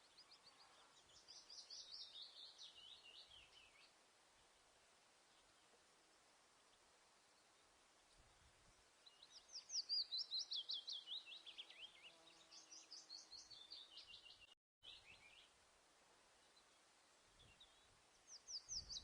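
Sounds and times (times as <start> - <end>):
faint steady hiss: 0.0 - 19.0
songbird chirping: 0.0 - 19.0.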